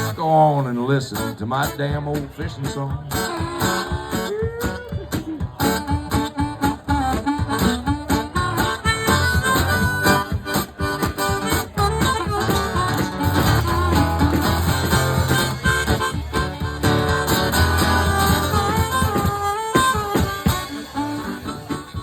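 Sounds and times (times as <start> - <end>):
guitar: 0.0 - 22.0
blues harmonica playing: 3.0 - 22.0.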